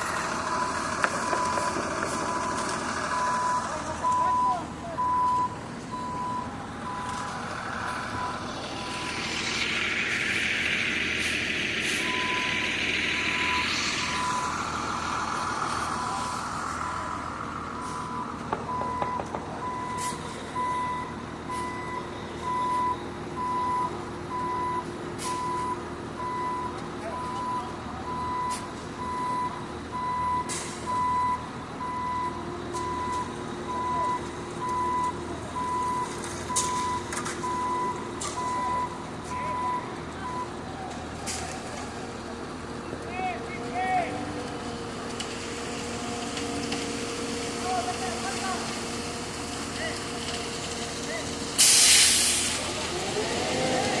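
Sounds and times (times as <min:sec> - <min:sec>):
truck reversing alarm beeping: 0:00.0 - 0:43.0
engine idling: 0:00.0 - 0:44.6
loud hiss of air: 0:07.9 - 0:16.8, 0:51.6 - 0:52.7.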